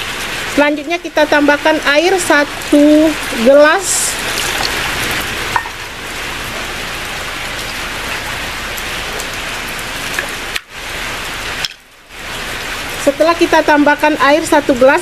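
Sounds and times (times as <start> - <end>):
water pouring into a pot: 2.6 - 8.3.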